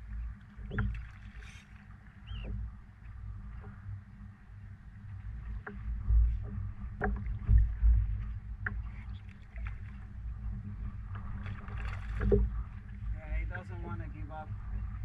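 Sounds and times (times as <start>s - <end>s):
low rumble: 0.0s - 15.0s.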